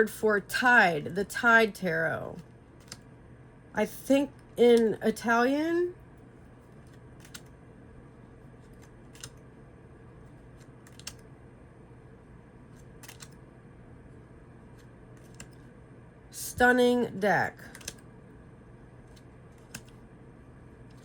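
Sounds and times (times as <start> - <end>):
low steady hum: 0.0 - 21.0
cards clicking: 2.8 - 3.0, 6.8 - 7.5, 8.6 - 9.4, 10.5 - 11.2, 12.8 - 13.4, 14.7 - 15.7, 17.7 - 18.0, 19.1 - 20.0.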